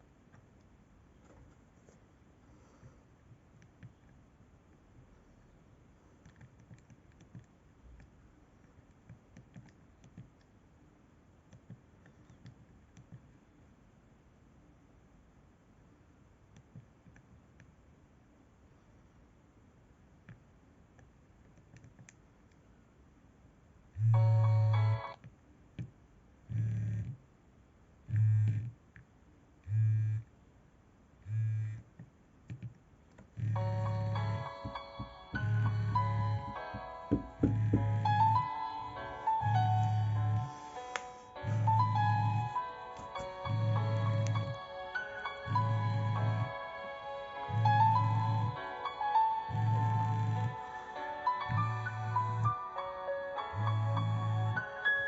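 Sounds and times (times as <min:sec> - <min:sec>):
phone vibrating alert buzzing: 0:24.0 - 0:25.1, 0:26.5 - 0:27.1, 0:28.1 - 0:28.7, 0:29.7 - 0:30.2, 0:31.3 - 0:31.8, 0:33.4 - 0:46.6, 0:47.4 - 0:52.7
electronic ringtone melody: 0:33.6 - 0:40.8, 0:41.4 - 0:55.0.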